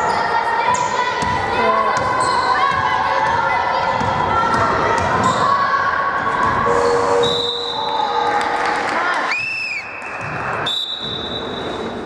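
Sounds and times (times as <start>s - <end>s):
players' voices: 0.0s - 9.4s
long referee's whistle blast: 6.7s - 8.0s.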